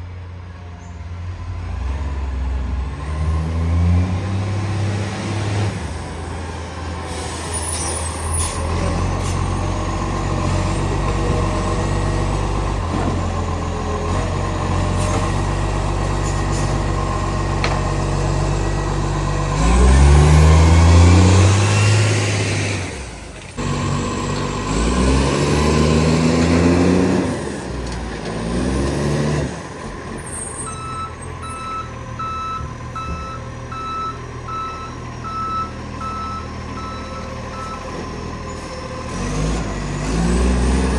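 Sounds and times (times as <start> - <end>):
diesel truck engine idling and revving: 0.0 - 40.9
reversing alarm beeps: 30.7 - 37.9.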